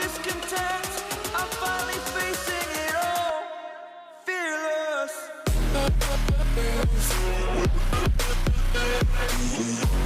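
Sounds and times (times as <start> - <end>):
electronic rock music: 0.0 - 3.5, 5.5 - 10.0.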